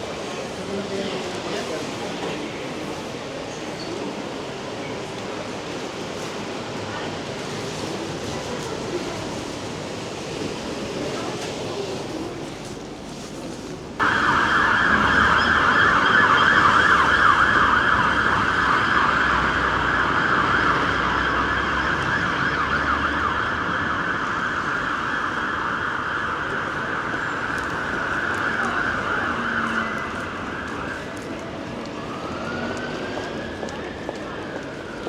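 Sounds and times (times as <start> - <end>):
emergency vehicle siren: 14.0 - 35.0.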